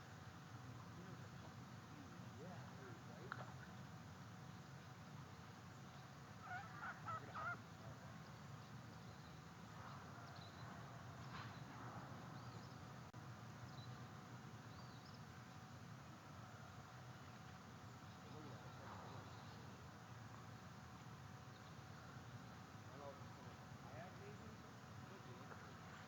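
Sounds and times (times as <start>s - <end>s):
loon wavering calls: 6.4s - 8.0s.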